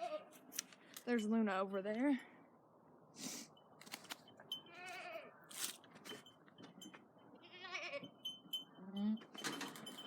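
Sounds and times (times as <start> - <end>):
goats bleating: 7.4 - 8.1.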